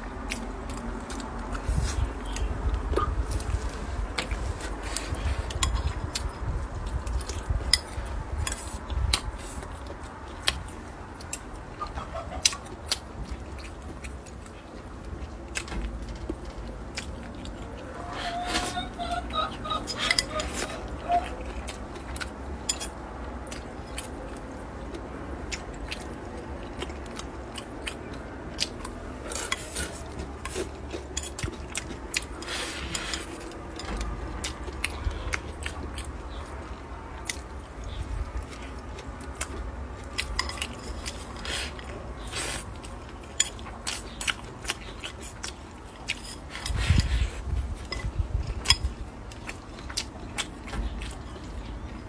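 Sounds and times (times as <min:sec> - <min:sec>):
utensils clicking against a bowl: 0:19.8 - 0:21.3.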